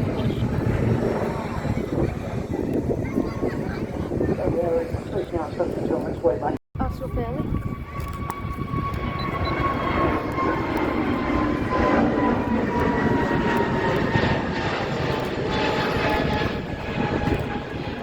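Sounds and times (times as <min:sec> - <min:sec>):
jet airliner engine roar: 0:00.0 - 0:18.0
jet engine whine falling: 0:00.0 - 0:18.0.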